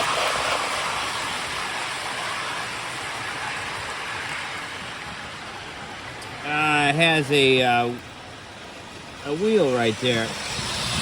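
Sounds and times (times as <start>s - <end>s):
toy train hissing rumble: 9.3s - 11.0s.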